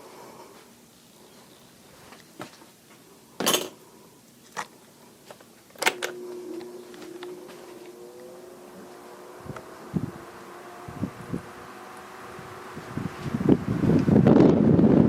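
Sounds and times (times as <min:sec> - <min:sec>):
electric fan motor humming: 0:04.2 - 0:15.0.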